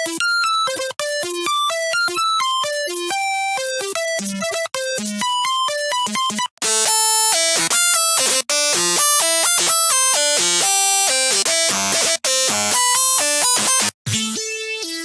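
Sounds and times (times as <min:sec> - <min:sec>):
buzzy synthesizer bass notes: 0:06.6 - 0:14.0.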